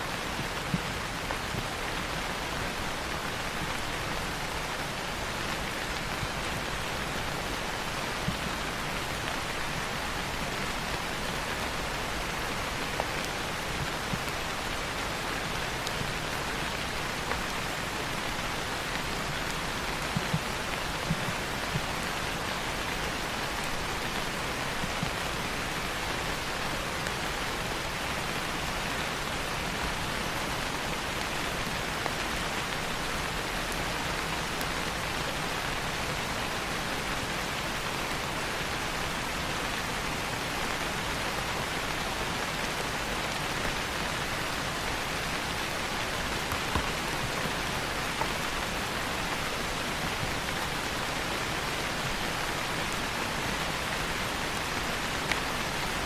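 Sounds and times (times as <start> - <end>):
steady rain falling: 0.0 - 56.0
faint wood fire crackles: 43.3 - 52.6.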